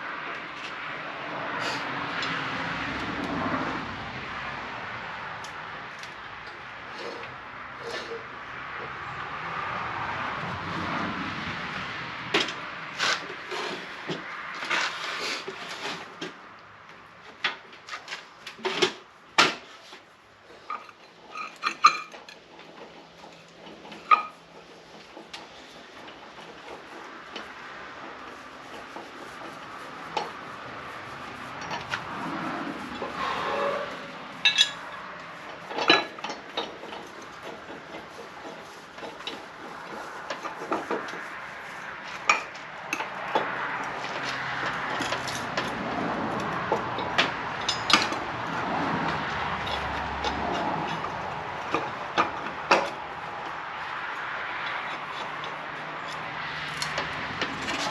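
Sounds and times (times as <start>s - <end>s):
metal tools clinking and scraping: 19.9s - 25.1s, 31.6s - 41.2s, 42.0s - 48.4s
metal clanks and knocks: 20.6s - 30.4s, 31.6s - 41.3s, 42.0s - 53.3s
sharp metallic clanks: 34.4s - 34.9s, 47.0s - 48.2s.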